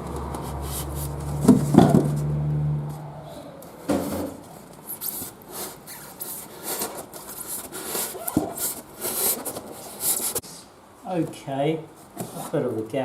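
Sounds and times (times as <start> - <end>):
scraping on plastic lid: 3.9 - 10.4.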